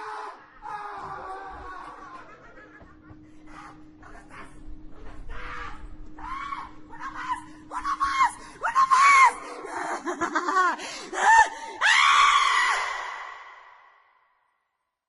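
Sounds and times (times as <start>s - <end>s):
person screaming: 5.3s - 10.1s, 11.2s - 13.5s.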